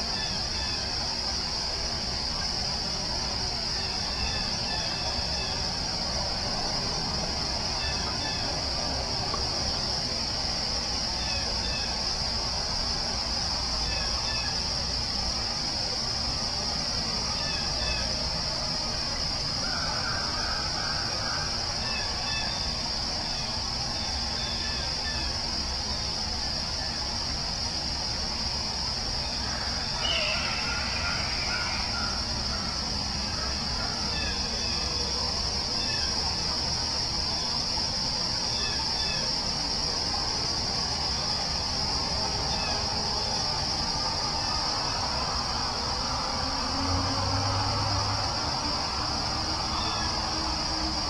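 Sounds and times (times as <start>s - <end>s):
high-pitched insect chorus: 0.0s - 51.0s.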